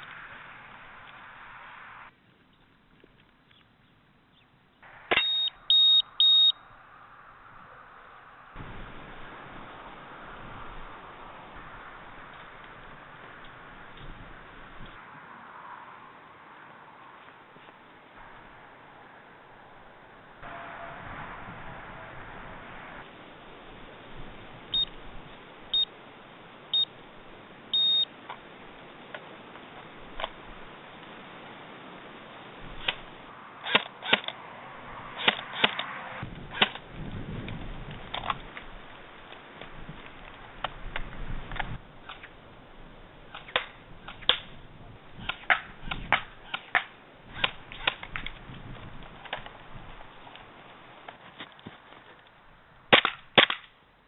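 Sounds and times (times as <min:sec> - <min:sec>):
electronic start beeps: 0:05.2 - 0:06.6, 0:27.8 - 0:28.0
airsoft gun shots: 0:52.9 - 0:53.7.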